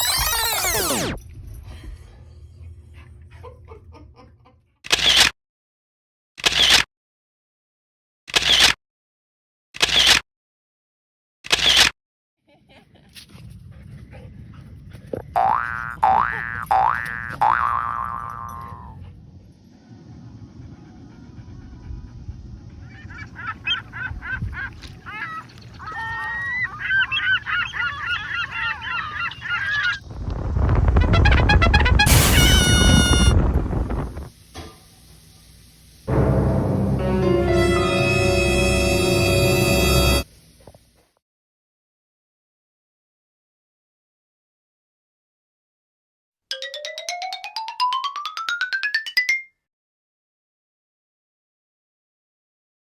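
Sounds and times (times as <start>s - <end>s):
short sound effect: 0.0s - 1.6s, 31.2s - 34.2s, 36.1s - 40.2s
low rumble: 1.2s - 4.4s, 18.7s - 23.4s
geese honking: 23.3s - 30.0s, 36.4s - 40.2s
loud low noise: 36.1s - 40.3s.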